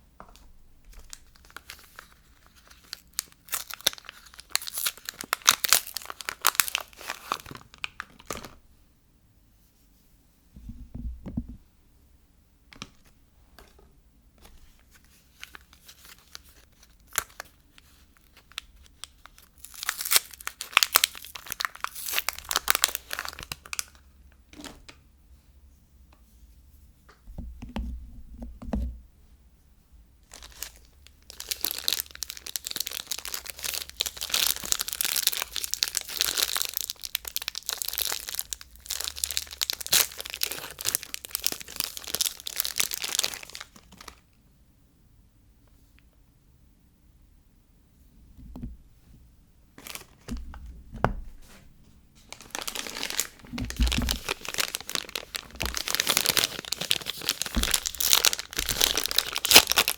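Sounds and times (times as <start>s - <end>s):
wrappers being torn and crinkled: 0.9s - 8.6s, 15.3s - 24.0s, 30.3s - 44.2s, 49.8s - 50.3s, 52.2s - 59.9s
dull thumps: 10.5s - 11.7s, 48.3s - 48.9s, 50.2s - 52.0s, 53.1s - 54.6s, 57.4s - 58.8s.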